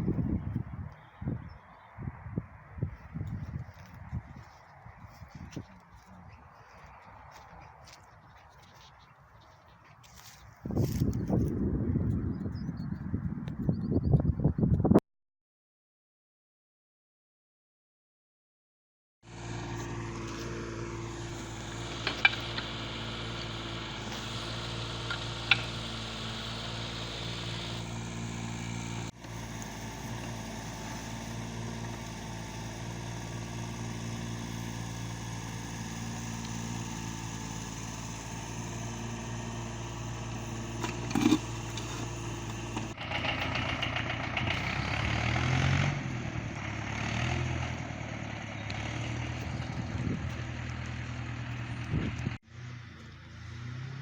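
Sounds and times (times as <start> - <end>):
vehicle engine running: 2.9 - 12.8, 19.3 - 54.0.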